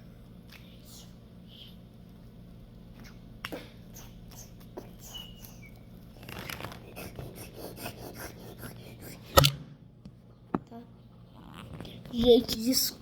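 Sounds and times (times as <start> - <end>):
steady low hum: 0.0 - 13.0
marker scratching on paper: 6.8 - 9.2.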